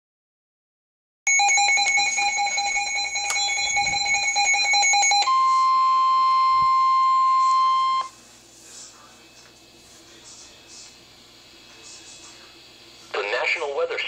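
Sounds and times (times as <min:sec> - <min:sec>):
pulsing electronic alarm: 0:01.3 - 0:08.1
steady warning alarm tone: 0:01.3 - 0:08.2.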